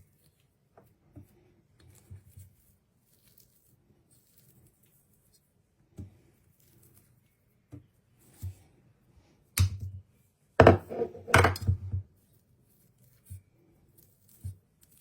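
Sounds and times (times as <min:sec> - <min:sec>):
knife chopping on cutting board: 0:10.6 - 0:11.6.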